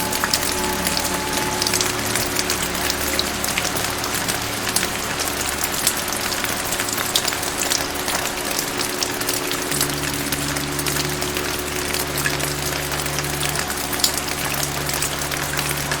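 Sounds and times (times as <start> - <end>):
soft background tone: 0.0 - 5.2
raindrops tapping: 0.0 - 16.0
steady rain hiss: 0.0 - 16.0.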